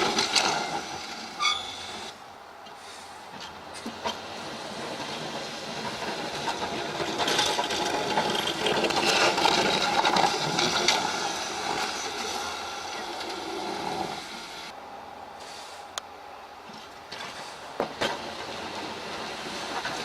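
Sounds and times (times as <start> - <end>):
snowplow blade scraping snow: 0.0 - 2.2, 2.8 - 14.7, 16.7 - 20.0
truck engine: 2.9 - 14.8.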